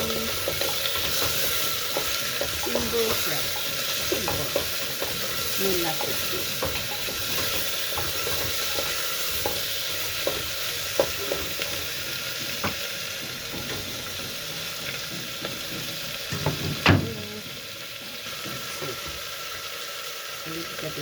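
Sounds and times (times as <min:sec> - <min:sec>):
food sizzling in a frying pan: 0:00.0 - 0:21.0
spatula knocking against pan: 0:00.4 - 0:11.7, 0:12.4 - 0:16.9
loud clank: 0:12.6 - 0:17.2.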